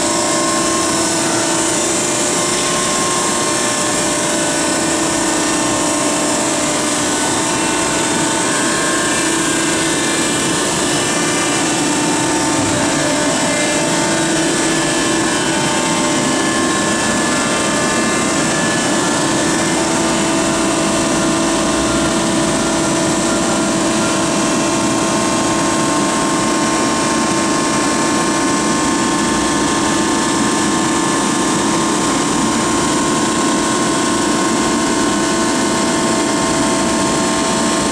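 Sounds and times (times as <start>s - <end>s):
baling press machine noise: 0.0s - 37.9s.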